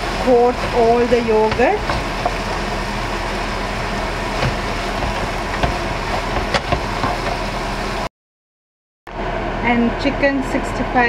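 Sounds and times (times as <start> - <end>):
pan sizzling: 0.0 - 8.1.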